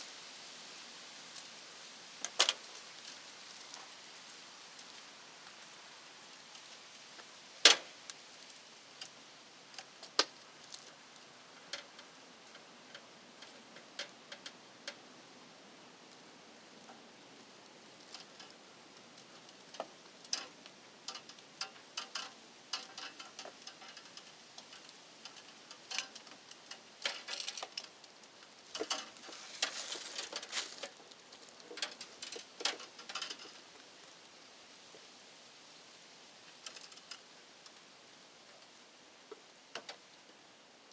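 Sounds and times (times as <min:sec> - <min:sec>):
hand tools clicking and scraping: 0:28.7 - 0:33.6.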